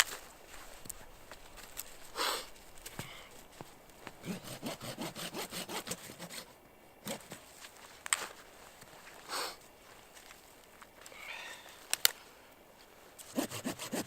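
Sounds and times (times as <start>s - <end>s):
saw cutting branch: 4.2s - 7.4s, 13.2s - 14.0s.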